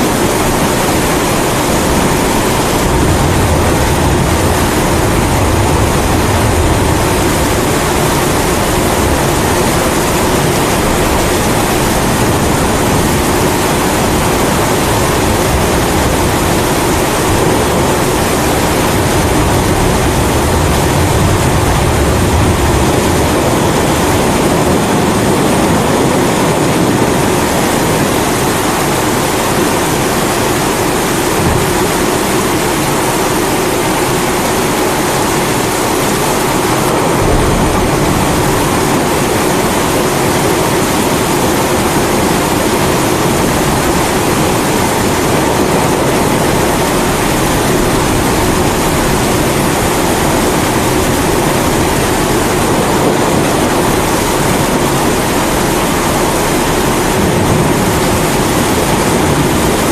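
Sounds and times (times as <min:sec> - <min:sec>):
rain: 0:00.0 - 0:59.9
thunder rumble: 0:00.0 - 0:59.9.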